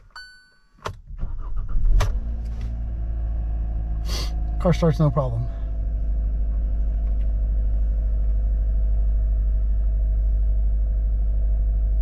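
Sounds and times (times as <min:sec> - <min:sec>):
car engine idling: 0:01.3 - 0:12.0.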